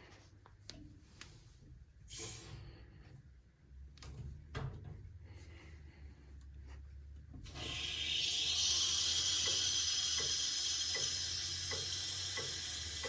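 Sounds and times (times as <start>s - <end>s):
water hissing through a valve: 2.1s - 2.5s, 7.5s - 13.0s.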